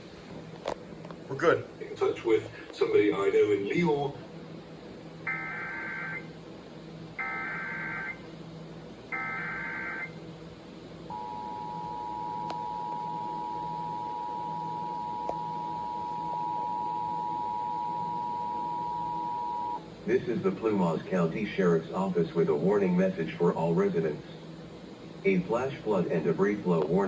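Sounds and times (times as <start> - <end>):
steady dual tone: 0.0 - 20.6.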